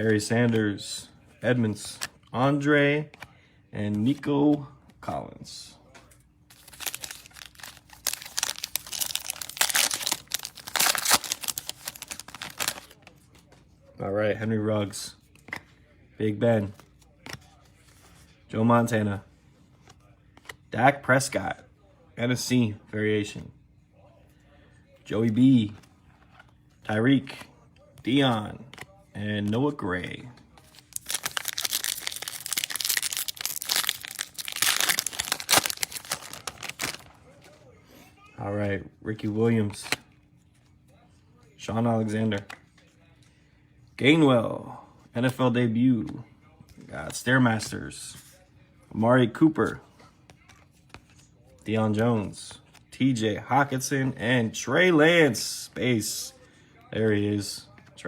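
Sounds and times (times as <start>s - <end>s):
foil wrapper tearing and crinkling: 6.5s - 12.9s, 30.8s - 37.1s.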